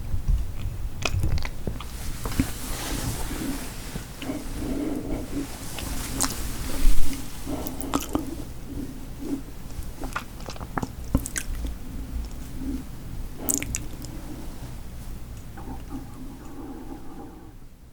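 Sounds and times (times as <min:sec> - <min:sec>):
wet mouth clicks: 0:04.2 - 0:06.4, 0:07.1 - 0:14.5, 0:15.3 - 0:17.4
chewing and biting: 0:04.2 - 0:14.2.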